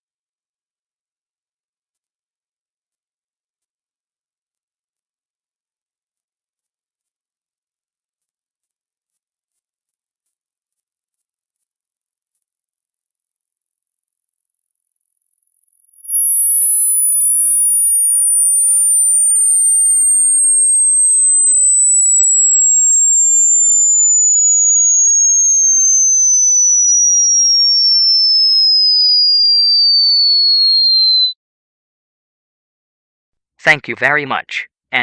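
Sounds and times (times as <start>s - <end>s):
sine tone sweeping down: 15.3s - 31.4s.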